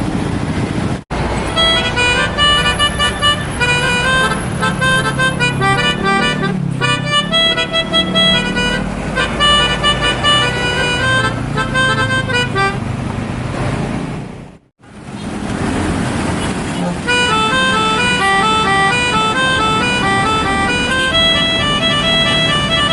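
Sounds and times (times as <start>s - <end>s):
bus engine rumble: 0.0s - 22.9s
bus multi-tone horn tune: 1.2s - 12.9s, 16.8s - 22.9s.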